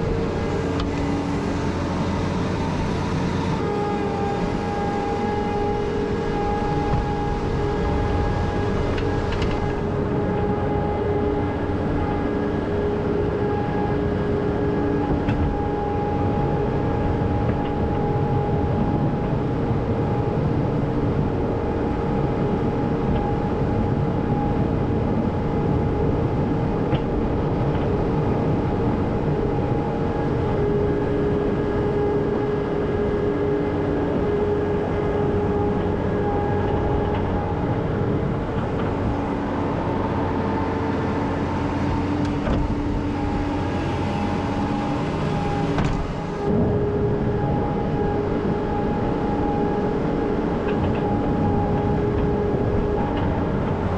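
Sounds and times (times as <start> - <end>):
machine rumbling: 34.5 - 53.9.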